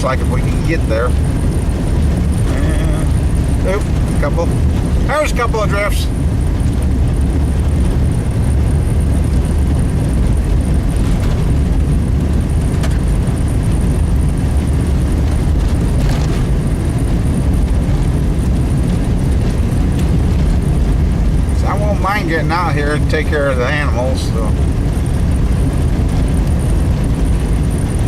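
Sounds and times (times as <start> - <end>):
truck engine and tyres rumbling: 0.0 - 28.0.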